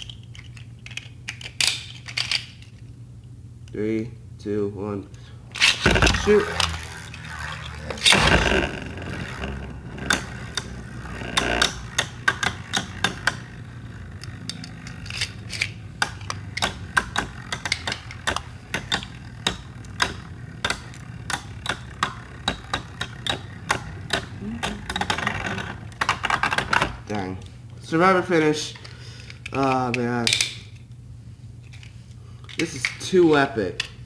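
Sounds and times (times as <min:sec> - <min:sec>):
low whir of spinning tops: 0:05.4 - 0:27.2
spinning tops clicking: 0:05.5 - 0:27.0.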